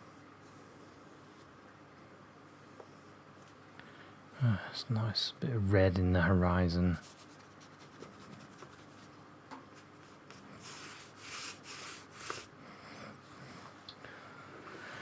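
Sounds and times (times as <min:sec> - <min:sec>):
rubbing strokes on paper: 0:07.0 - 0:09.1, 0:09.8 - 0:12.5.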